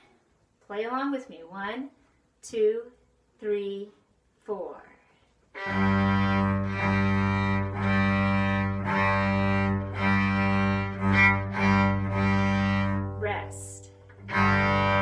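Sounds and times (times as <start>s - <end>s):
cello and violin bowed notes: 5.6s - 15.0s.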